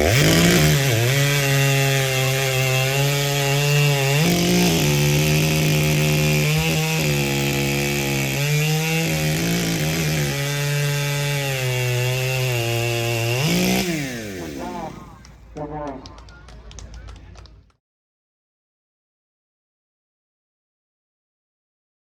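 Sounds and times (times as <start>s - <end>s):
chainsaw cutting through log: 0.0s - 15.3s.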